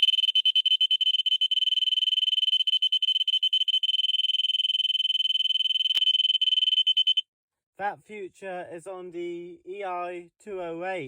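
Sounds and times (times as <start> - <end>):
alarm high-pitched fluttering tone: 0.0 - 7.2.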